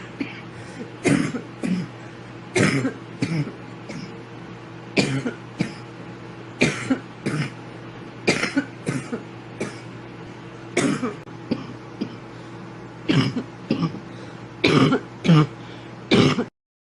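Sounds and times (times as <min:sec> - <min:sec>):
girl coughing: 0:00.0 - 0:00.4, 0:01.0 - 0:01.9, 0:02.6 - 0:04.1, 0:05.0 - 0:05.9, 0:06.6 - 0:07.6, 0:08.3 - 0:09.9, 0:10.8 - 0:12.2, 0:13.1 - 0:14.0, 0:14.6 - 0:15.5, 0:16.1 - 0:16.5.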